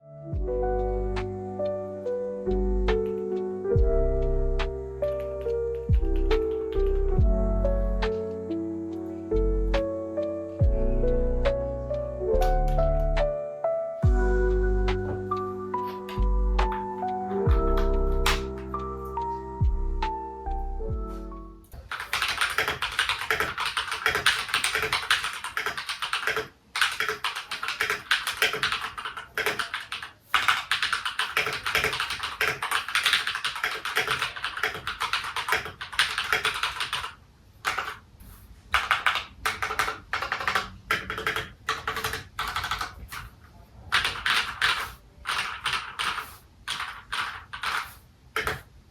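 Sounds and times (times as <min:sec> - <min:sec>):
mechanical keyboard typing: 0:05.2 - 0:07.2, 0:15.8 - 0:18.8, 0:21.7 - 0:38.0, 0:38.8 - 0:48.7.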